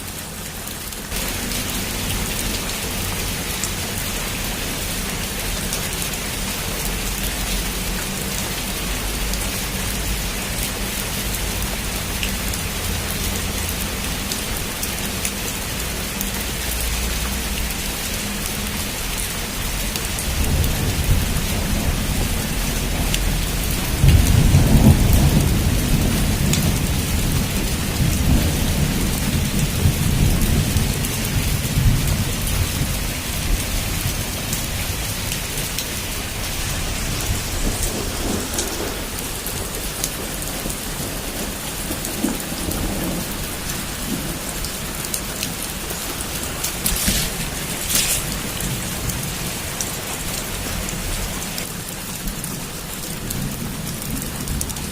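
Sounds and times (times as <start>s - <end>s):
heavy rain falling: 0.0s - 54.9s
rolling thunder rumble: 19.6s - 50.6s
sharp crackles: 46.5s - 48.6s.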